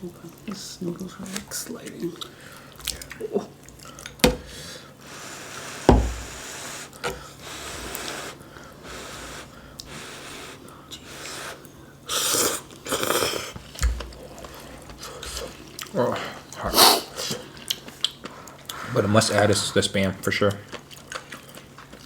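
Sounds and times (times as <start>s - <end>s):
chewing: 1.8s - 4.6s, 12.4s - 18.9s, 20.5s - 22.0s
dull thump: 4.2s - 4.6s, 5.9s - 6.4s
slurping noodles: 4.4s - 13.6s.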